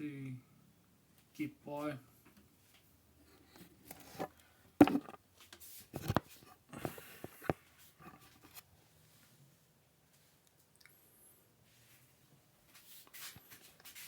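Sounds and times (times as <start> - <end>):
cookware knocking and clattering: 4.8 - 5.2.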